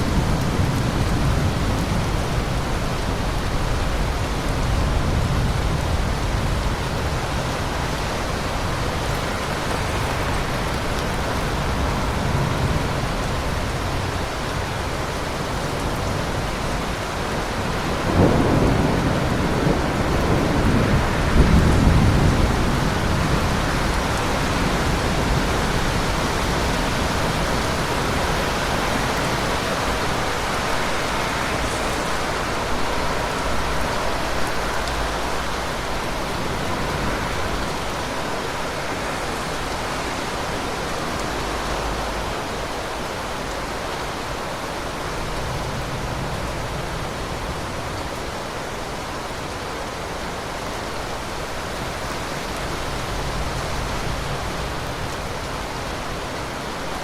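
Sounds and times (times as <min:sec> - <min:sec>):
heavy rain: 0:00.0 - 0:57.0
thunder rumbling: 0:17.5 - 0:40.7.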